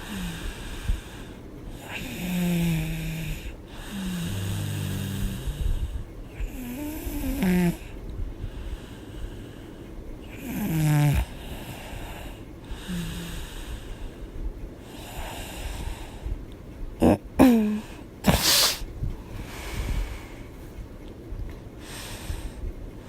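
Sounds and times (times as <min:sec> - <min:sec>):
woman snoring: 0:00.0 - 0:00.8, 0:01.8 - 0:07.9, 0:10.3 - 0:13.5, 0:17.0 - 0:18.8
noisy breath out: 0:08.4 - 0:10.4, 0:18.3 - 0:20.7, 0:21.8 - 0:22.7.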